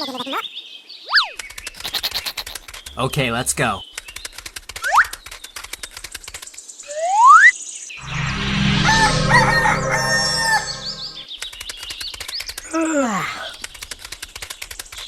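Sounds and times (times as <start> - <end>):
short falling tone: 8.0 - 11.3
rooster crowing: 8.8 - 11.2.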